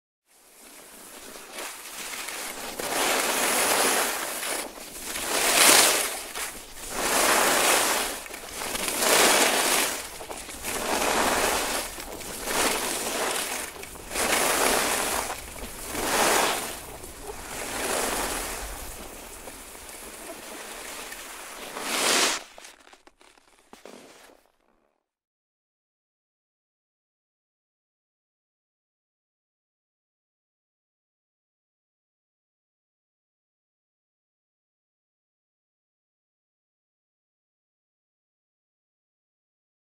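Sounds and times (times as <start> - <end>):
skis scraping over snow: 0.3 - 24.9.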